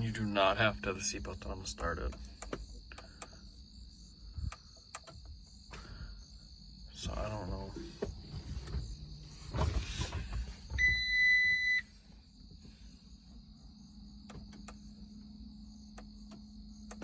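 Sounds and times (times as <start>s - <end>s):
crickets chirping: 0.0s - 17.0s
low steady hum: 0.0s - 17.0s
short rattle: 7.3s - 10.9s
high electronic warning beep: 10.8s - 12.0s.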